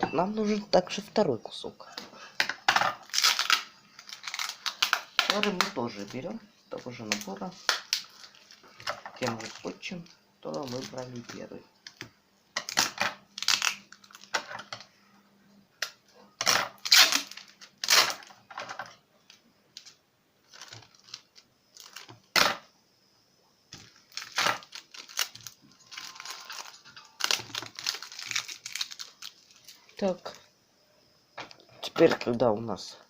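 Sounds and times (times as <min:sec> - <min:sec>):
adhesive tape ripping: 0:03.0 - 0:05.7, 0:12.7 - 0:14.3, 0:16.4 - 0:18.3.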